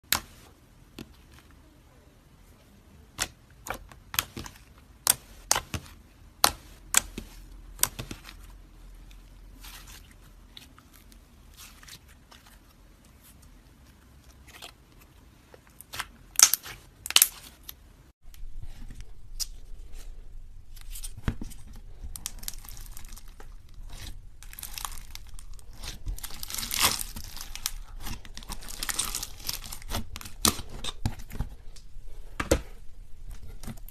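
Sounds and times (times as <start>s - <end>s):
slime popping and crackling: 15.8s - 17.8s, 22.1s - 31.0s.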